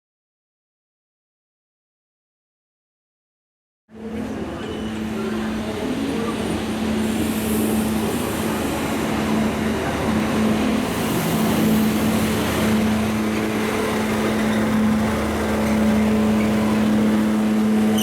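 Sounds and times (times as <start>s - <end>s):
diesel locomotive engine hum: 3.9s - 18.0s.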